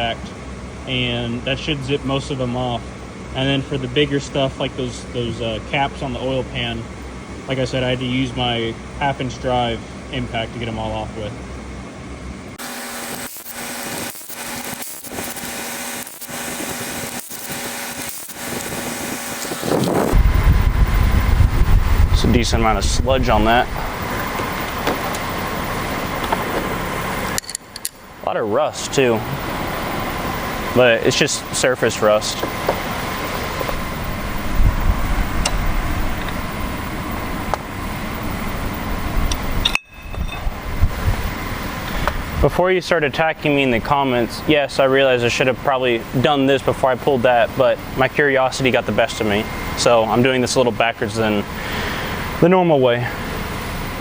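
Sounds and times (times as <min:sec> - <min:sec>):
fan running: 0:00.0 - 0:54.0
cordless power tool whining: 0:12.6 - 0:20.4.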